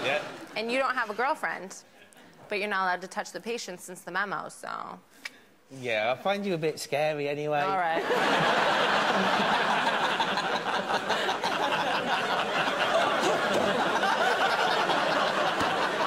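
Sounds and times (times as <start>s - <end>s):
audience laughing: 7.9s - 16.0s.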